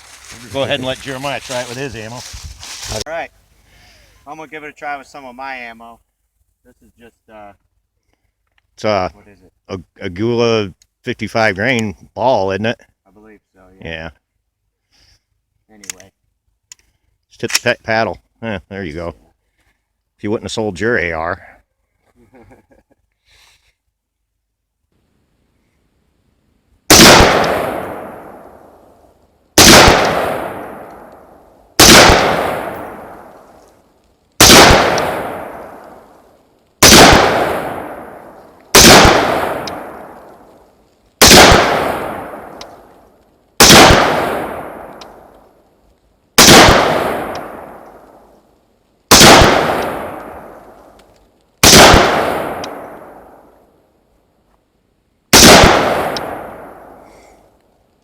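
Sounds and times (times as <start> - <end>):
rifle shots echoing: 26.9 - 29.0, 29.6 - 33.6, 34.4 - 40.5, 41.2 - 43.0, 43.6 - 45.3, 46.4 - 48.3, 49.1 - 51.0, 51.6 - 53.6, 55.3 - 57.1.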